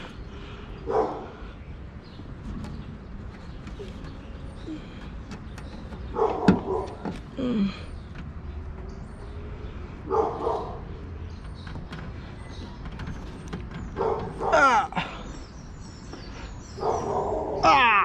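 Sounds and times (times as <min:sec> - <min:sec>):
dog barking: 0:00.8 - 0:01.4, 0:06.1 - 0:07.0, 0:10.1 - 0:10.9, 0:14.0 - 0:14.6, 0:16.8 - 0:17.6.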